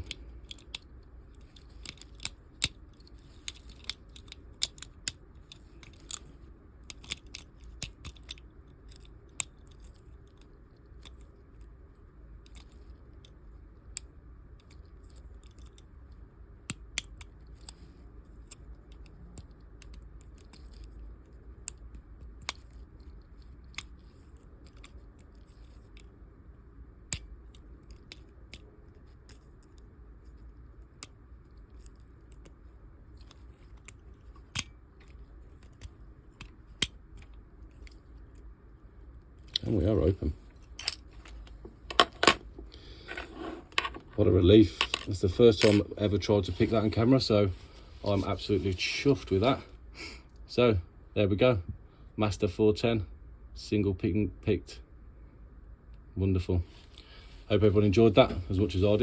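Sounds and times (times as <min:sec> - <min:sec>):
lock pick clicking and scraping: 0:00.0 - 0:11.8, 0:12.4 - 0:26.2, 0:26.9 - 0:38.5, 0:39.2 - 0:44.2, 0:44.8 - 0:45.9
faint steady hum: 0:00.0 - 0:59.0.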